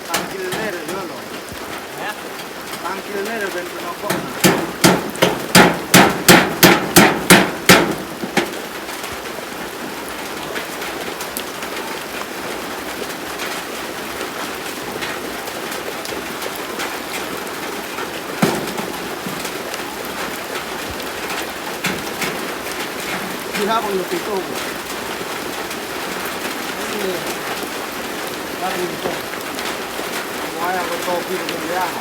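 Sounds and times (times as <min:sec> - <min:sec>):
heavy rain: 0:00.0 - 0:32.0
hammer striking wood: 0:04.1 - 0:08.6, 0:18.4 - 0:19.6, 0:21.8 - 0:23.8
single knock: 0:04.1 - 0:08.6, 0:18.4 - 0:19.5.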